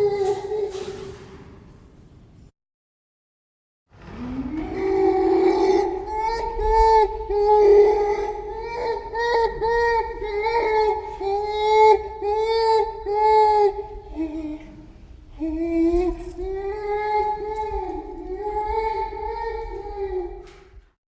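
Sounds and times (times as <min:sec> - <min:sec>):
gorilla calling: 0:04.5 - 0:14.2.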